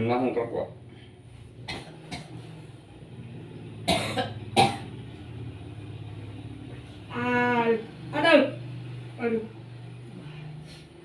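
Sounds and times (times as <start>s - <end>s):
person coughing: 3.9s - 4.9s.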